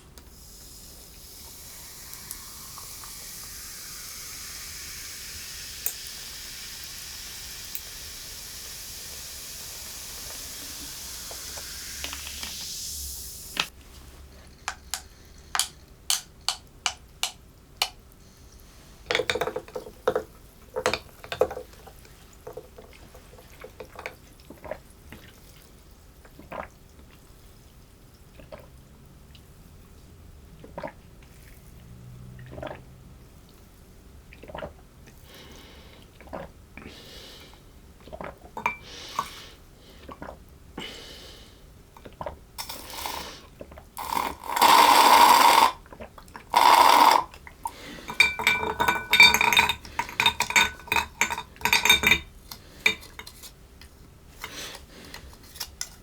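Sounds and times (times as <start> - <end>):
liquid pouring: 1.2 - 7.1, 42.0 - 53.5.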